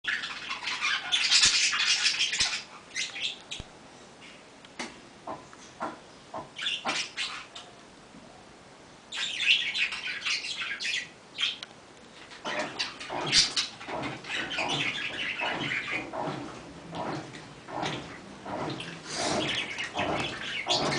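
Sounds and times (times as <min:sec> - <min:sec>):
washing machine water sloshing: 0:12.3 - 0:20.9.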